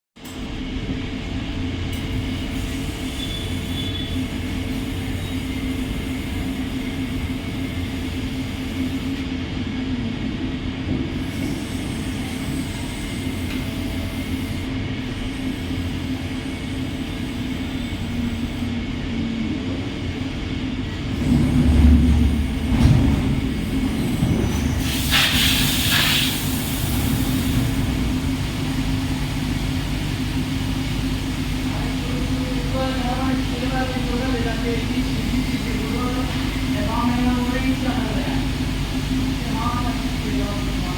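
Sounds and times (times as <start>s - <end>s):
brief hiss: 24.8s - 27.0s.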